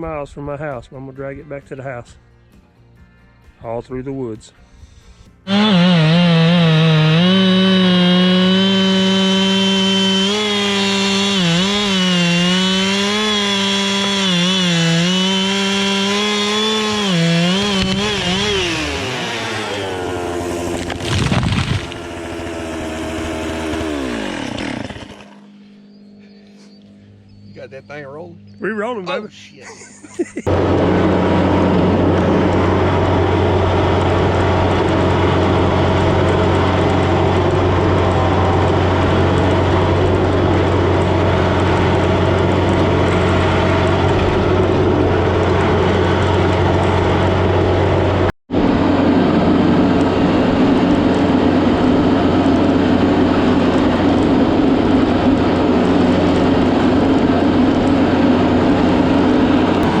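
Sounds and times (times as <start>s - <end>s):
tractor diesel engine under load: 5.5s - 25.5s, 30.5s - 60.0s.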